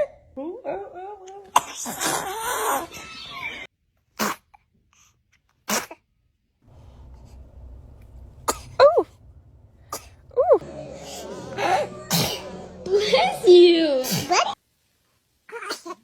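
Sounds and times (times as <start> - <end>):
babies sneezing: 1.5 - 3.5, 4.2 - 4.6, 5.6 - 6.0, 12.0 - 13.4, 14.0 - 14.6, 15.5 - 16.0
faint steady hum: 6.7 - 13.8.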